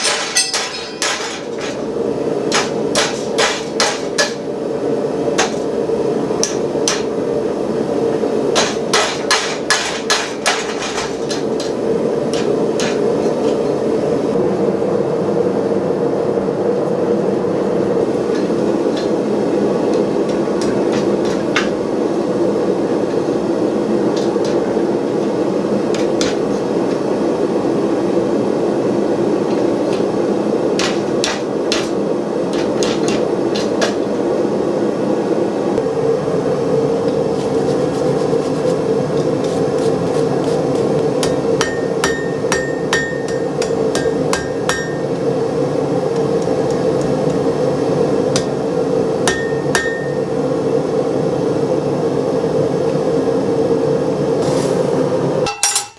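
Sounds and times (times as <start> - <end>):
hammer striking steel on anvil: 0.0 - 1.9, 2.5 - 4.5, 6.4 - 7.2, 8.5 - 13.3, 40.7 - 45.2, 48.3 - 48.6, 49.2 - 50.3, 55.4 - 55.9
gas forge roaring: 0.0 - 55.8.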